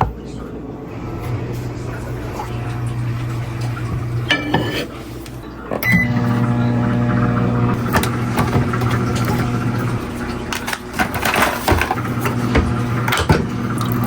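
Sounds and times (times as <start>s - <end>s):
microwave oven humming: 0.1s - 14.0s
microwave click: 5.8s - 11.4s.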